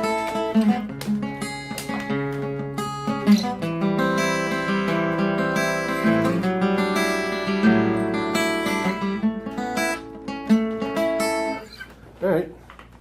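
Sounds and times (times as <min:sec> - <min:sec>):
acoustic guitar strumming chords: 0:00.0 - 0:11.9.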